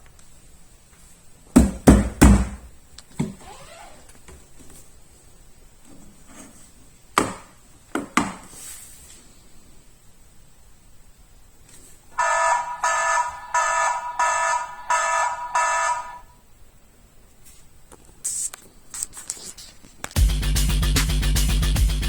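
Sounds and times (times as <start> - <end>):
home alarm buzzing beeps: 12.2 - 16.3.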